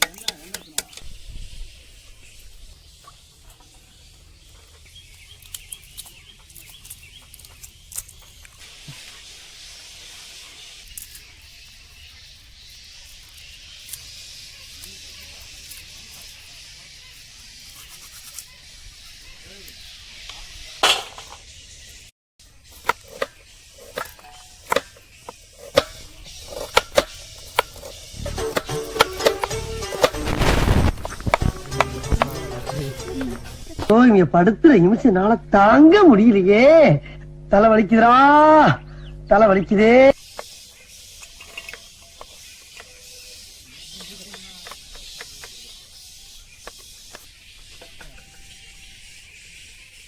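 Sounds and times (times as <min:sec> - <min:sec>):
birds chirping: 0:00.0 - 0:50.0
eggshells cracking and peeling: 0:02.9 - 0:09.3, 0:10.8 - 0:16.7, 0:22.6 - 0:33.9.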